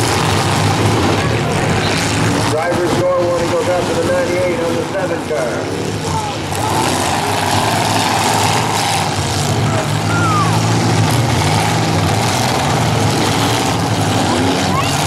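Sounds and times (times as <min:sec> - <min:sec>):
car engines running: 0:00.0 - 0:15.0.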